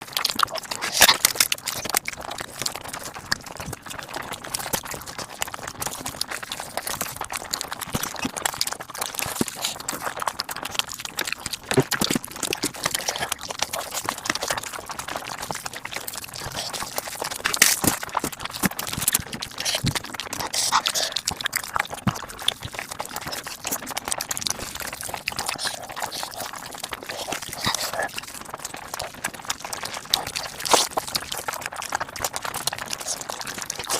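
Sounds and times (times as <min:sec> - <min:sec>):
rapid chewing and mouth clicks: 0:00.0 - 0:33.9.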